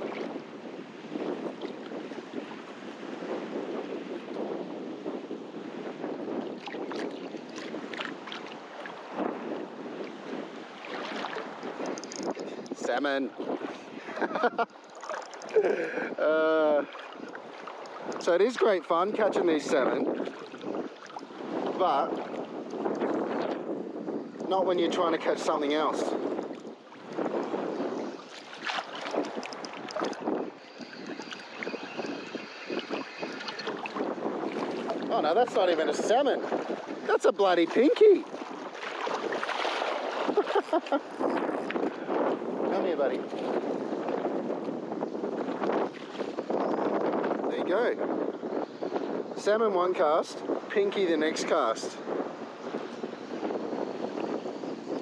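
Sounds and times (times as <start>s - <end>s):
surf washing onto beach: 0.0s - 55.0s
wind buffeting microphone: 0.0s - 55.0s
irregular clicks and ticks: 11.8s - 12.4s, 15.1s - 15.6s.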